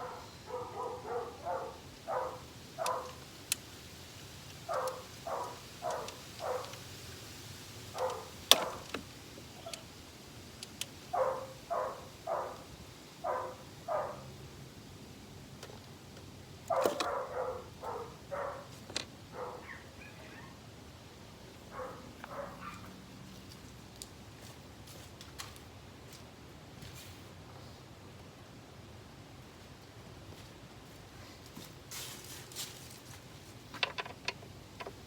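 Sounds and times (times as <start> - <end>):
dog barking: 0.0 - 3.2, 4.7 - 6.8, 8.0 - 8.9, 11.1 - 14.3, 16.7 - 20.6, 21.7 - 23.0.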